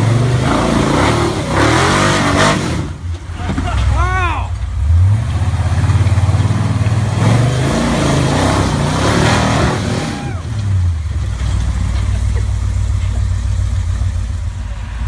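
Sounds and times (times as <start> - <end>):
car engine revving hard: 0.0 - 3.0, 4.8 - 10.7.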